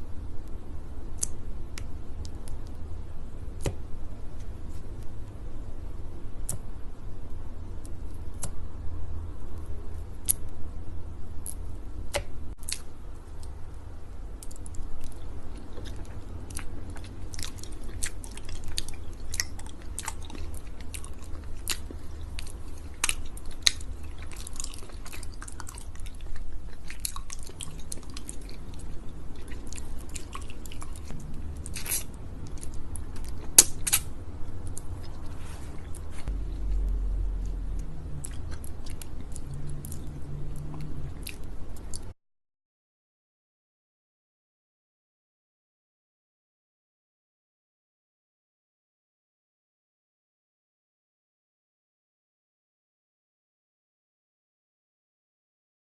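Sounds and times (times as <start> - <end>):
wet sticky chewing: 14.4 - 42.1.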